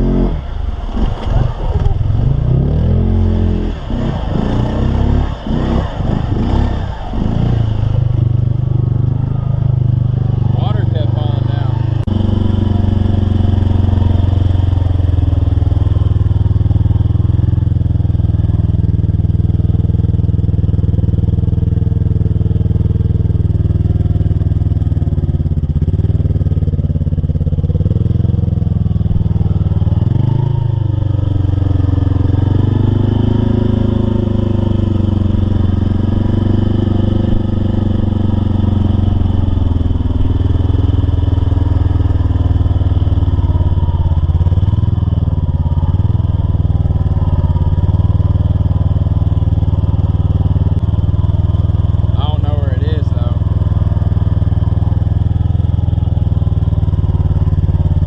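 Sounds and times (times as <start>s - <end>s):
truck engine revving: 0.0s - 20.0s.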